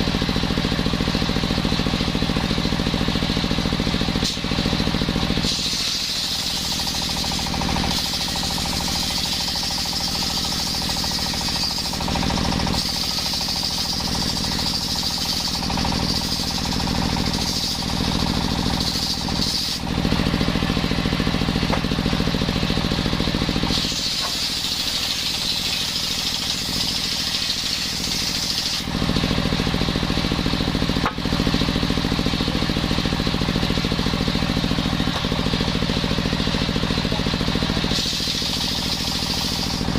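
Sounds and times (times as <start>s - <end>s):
engine-driven circular saw: 0.0s - 39.9s
saw blade cutting wood hiss: 4.0s - 22.2s, 23.5s - 28.9s, 37.4s - 39.9s.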